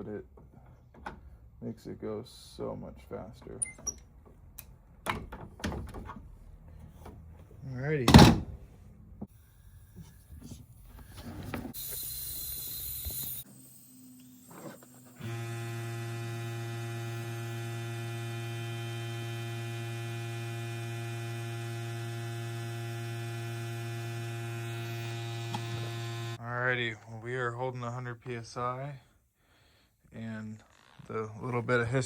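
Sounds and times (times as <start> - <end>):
air hiss: 9.4 - 15.2
compressor motor humming: 9.4 - 26.4.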